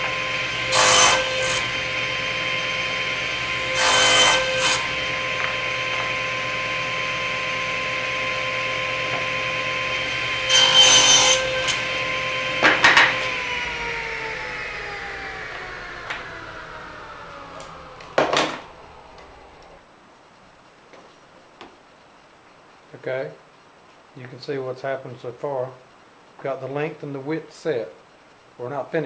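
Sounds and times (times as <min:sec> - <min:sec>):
saw blade cutting wood: 0:00.0 - 0:02.1, 0:03.0 - 0:06.2, 0:10.1 - 0:13.4
table saw whining: 0:00.0 - 0:19.8
saw spinning down: 0:10.6 - 0:19.8.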